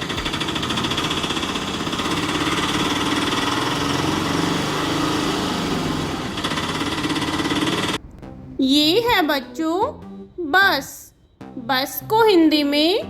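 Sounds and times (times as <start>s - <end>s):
auto rickshaw engine running: 0.0s - 8.0s.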